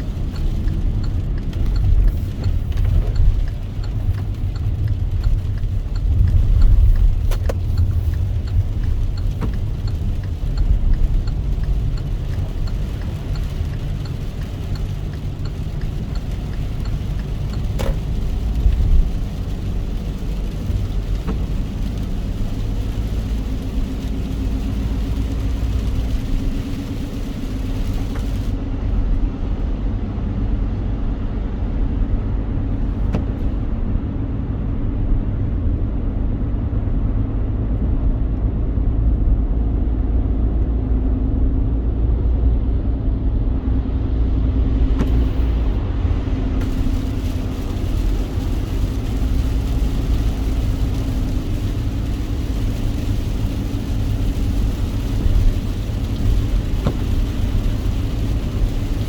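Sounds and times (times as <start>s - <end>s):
rain hiss: 0.0s - 31.3s, 44.4s - 59.0s
car road rumble: 0.0s - 59.0s.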